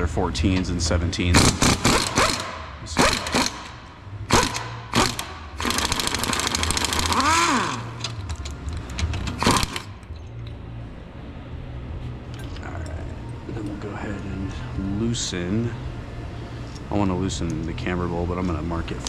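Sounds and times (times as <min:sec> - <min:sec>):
ratchet wrench clicking: 0:01.4 - 0:10.0.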